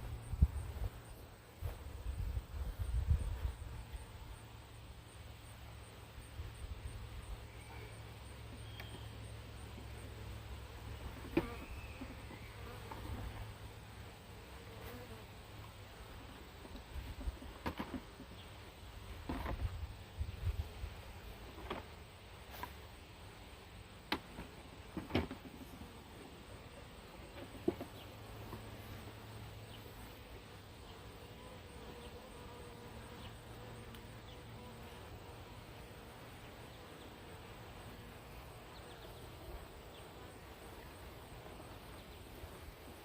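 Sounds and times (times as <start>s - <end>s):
bee swarm buzzing: 24.2s - 43.0s.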